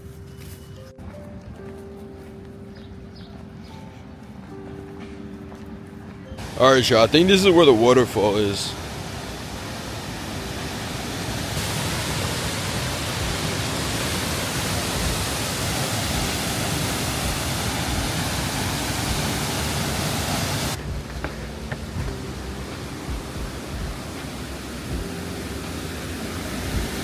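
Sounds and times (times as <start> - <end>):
rushing water at waterfall: 6.4 - 27.0.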